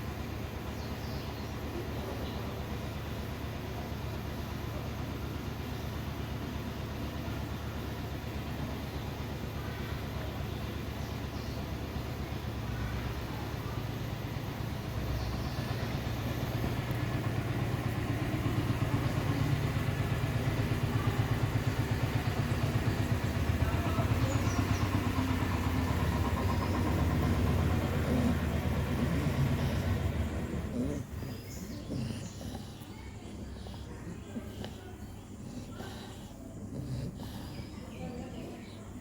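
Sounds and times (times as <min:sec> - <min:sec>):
dog snoring: 0:14.8 - 0:39.0.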